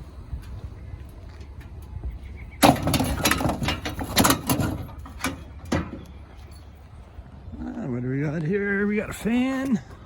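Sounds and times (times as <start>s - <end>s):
metal scrap rattling and clanking: 2.6s - 6.2s.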